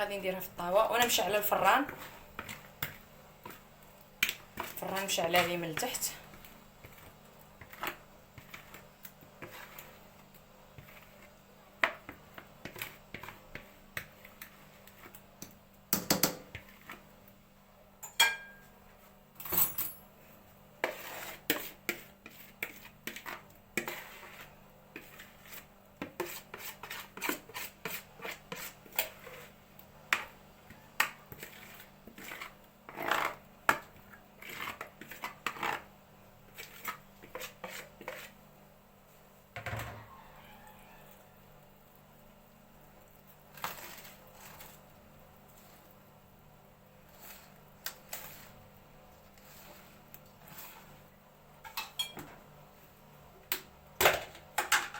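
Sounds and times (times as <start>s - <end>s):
utensils clinking against bowl and pan: 18.0s - 18.8s, 51.6s - 52.3s.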